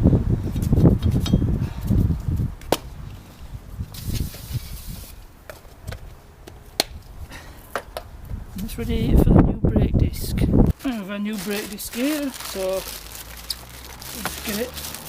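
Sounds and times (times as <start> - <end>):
low rumbling noise: 11.8 - 15.0.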